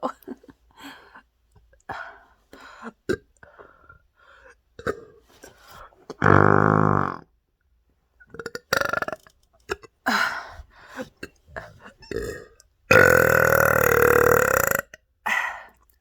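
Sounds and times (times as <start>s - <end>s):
woman burping: 6.1s - 7.3s, 8.3s - 10.2s, 11.2s - 15.5s.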